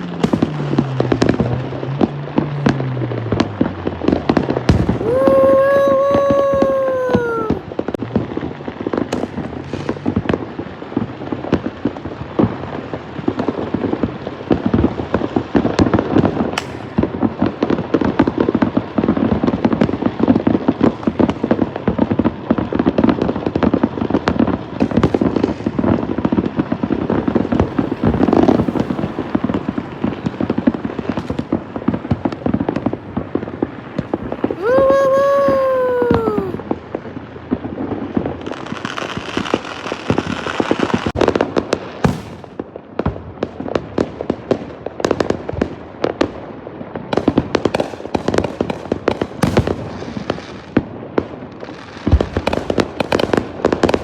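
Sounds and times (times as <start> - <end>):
fireworks crackling and popping: 0.0 - 54.0
loud firework bangs: 0.2 - 6.8.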